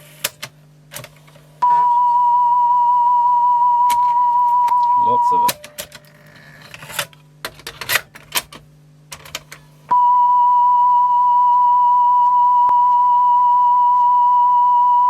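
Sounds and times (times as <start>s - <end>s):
steady test tone: 1.6s - 5.8s.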